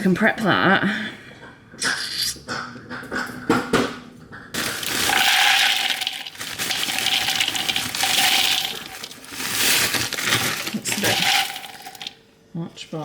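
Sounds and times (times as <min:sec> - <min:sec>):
tap running water into container: 0:04.7 - 0:12.2.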